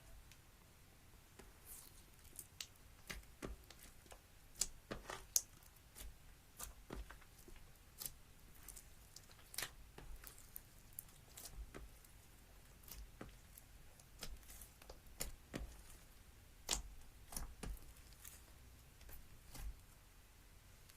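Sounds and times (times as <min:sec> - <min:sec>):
slime squishing: 0:01.4 - 0:20.0.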